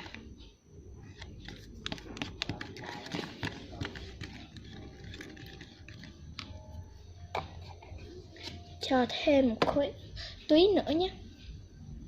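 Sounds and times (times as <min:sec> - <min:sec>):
slime stirring clicks and scrapes: 0:00.0 - 0:06.7.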